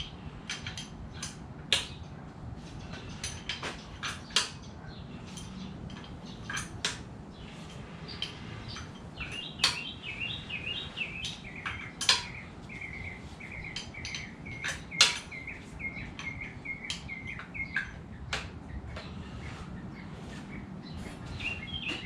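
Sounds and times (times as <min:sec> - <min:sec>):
metallic clinks of hand tools: 0:02.8 - 0:07.0, 0:07.6 - 0:18.0
bird chirping rapidly: 0:07.3 - 0:22.0.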